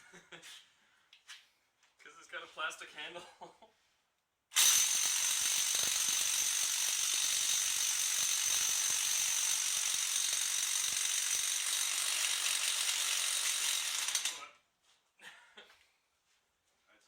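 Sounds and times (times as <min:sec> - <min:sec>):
impact wrench hammering: 0:04.6 - 0:14.4.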